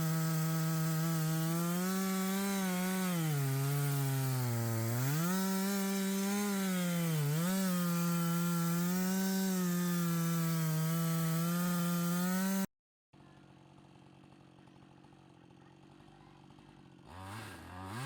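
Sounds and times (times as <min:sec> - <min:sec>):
chainsaw cutting log: 0:00.0 - 0:12.7, 0:16.5 - 0:18.0.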